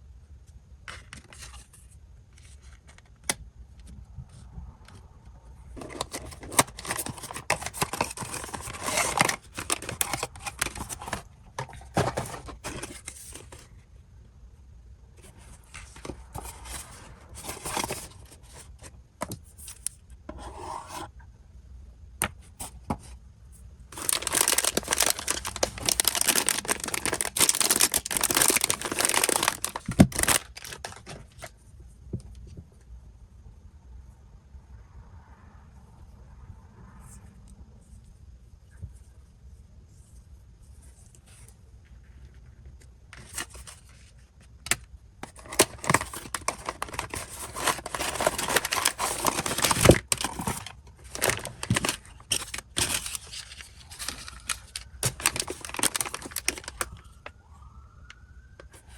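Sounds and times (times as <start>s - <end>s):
packaging ripping and rustling: 5.8s - 13.6s, 15.9s - 18.9s, 23.9s - 31.5s, 44.7s - 57.1s.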